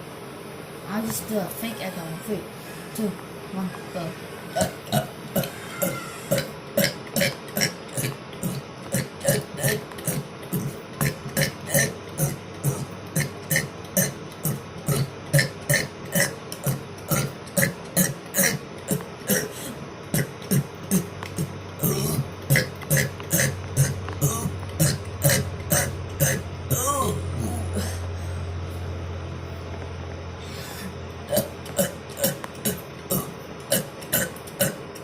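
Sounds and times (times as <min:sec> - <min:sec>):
man burping: 0:04.5 - 0:28.2, 0:30.8 - 0:34.8.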